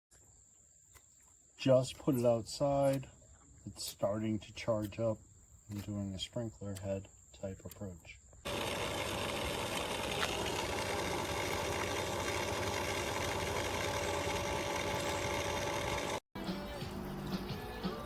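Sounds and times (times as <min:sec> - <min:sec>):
fountain pump humming: 0:08.5 - 0:16.2.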